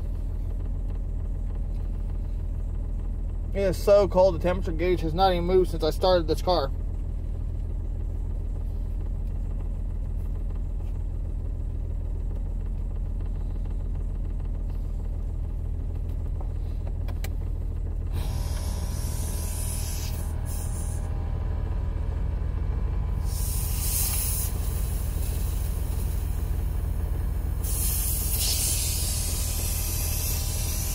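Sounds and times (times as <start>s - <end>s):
car engine idling: 0.0s - 30.9s
air hissing: 18.1s - 21.1s, 23.2s - 26.7s, 27.5s - 30.9s.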